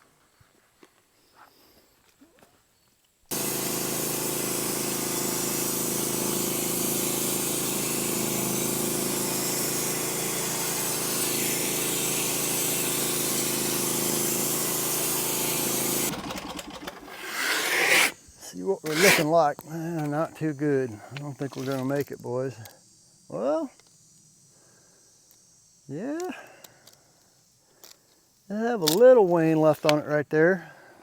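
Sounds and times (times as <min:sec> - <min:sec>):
band saw blade hissing in wood: 0:03.3 - 0:22.0.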